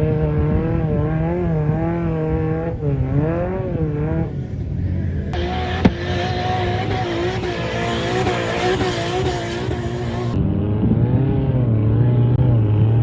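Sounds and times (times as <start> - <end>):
car engine revving: 0.0 - 13.0
spinning tyres hissing: 5.4 - 10.4.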